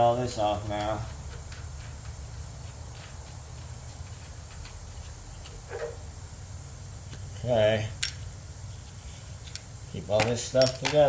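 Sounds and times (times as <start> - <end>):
steady low hum: 0.0 - 11.0
hand tools clicking: 9.4 - 11.0.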